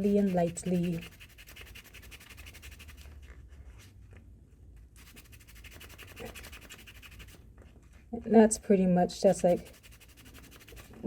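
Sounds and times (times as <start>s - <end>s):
brass rasping on sandpaper: 0.0s - 3.1s, 5.0s - 7.4s, 9.2s - 11.0s.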